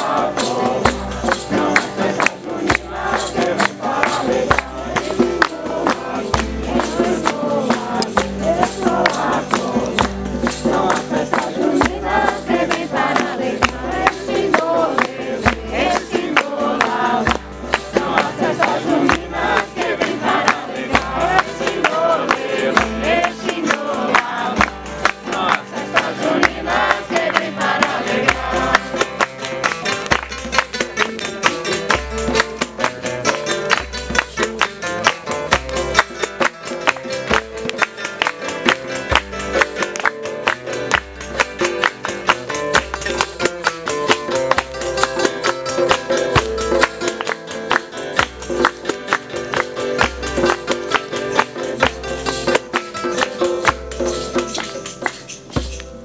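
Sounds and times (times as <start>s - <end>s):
group singing a hymn: 0.0s - 29.5s
hand percussion beat: 0.0s - 56.0s.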